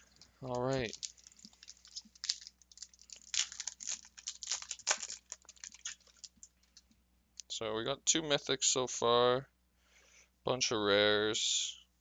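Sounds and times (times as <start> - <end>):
foil wrapper crinkling: 0.0 - 6.9.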